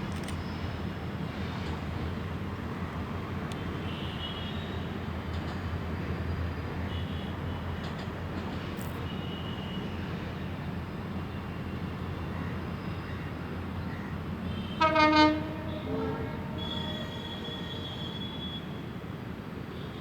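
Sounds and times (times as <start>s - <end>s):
two-tone train horn: 14.5s - 19.0s
locomotive engine rumble: 14.8s - 17.6s.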